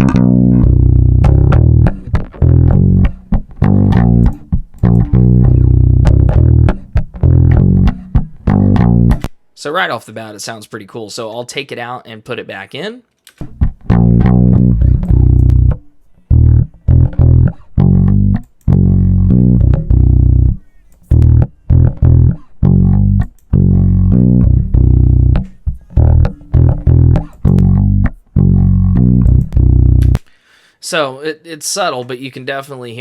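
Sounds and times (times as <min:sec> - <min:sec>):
electric bass riff: 0:00.0 - 0:09.3, 0:13.5 - 0:30.2.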